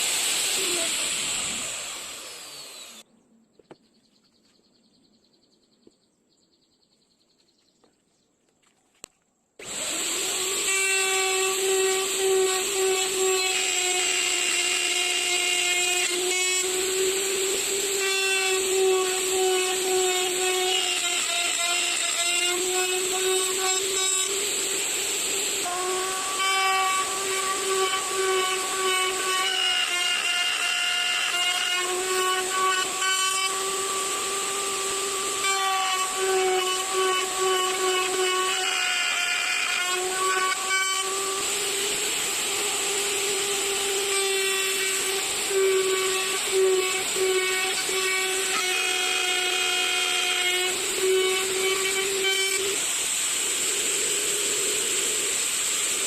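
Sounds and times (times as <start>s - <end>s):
woodworking machine whining: 0.0s - 3.0s, 9.6s - 56.0s
constant hiss: 8.6s - 56.0s.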